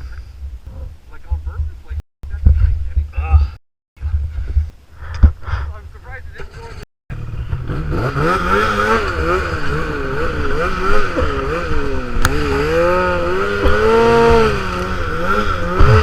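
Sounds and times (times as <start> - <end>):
snowmobile engine revving: 7.2 - 16.0.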